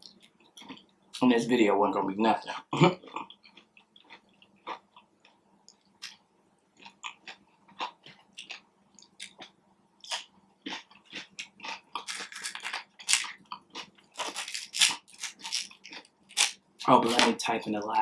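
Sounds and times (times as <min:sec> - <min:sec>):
person chewing with wet smacks: 0:02.9 - 0:06.2, 0:06.8 - 0:16.6.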